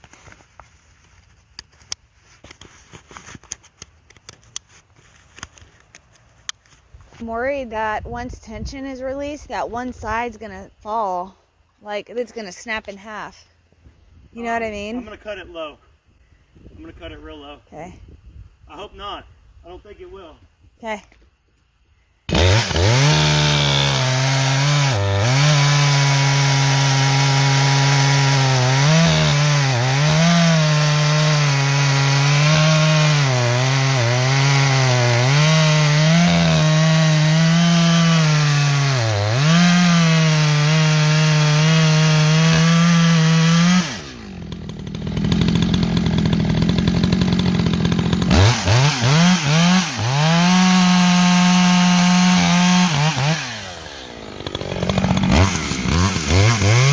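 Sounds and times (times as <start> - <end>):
chainsaw cutting wood: 22.3 - 56.9
chainsaw idling: 22.3 - 56.9.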